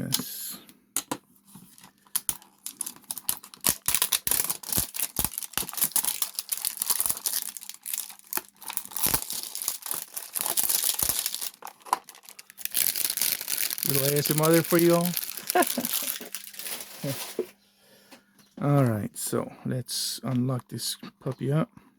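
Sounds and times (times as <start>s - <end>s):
plastic wrap crinkling: 1.7s - 17.6s
cardboard tearing: 2.7s - 17.4s.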